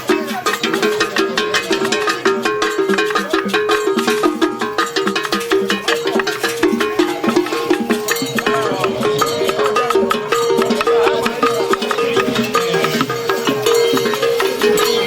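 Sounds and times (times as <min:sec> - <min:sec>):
music with percussion: 0:00.0 - 0:15.0.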